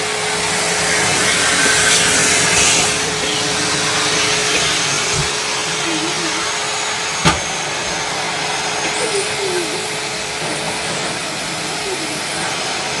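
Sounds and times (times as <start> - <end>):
vacuum cleaner running: 0.0 - 13.0
sharp knock: 7.2 - 7.6.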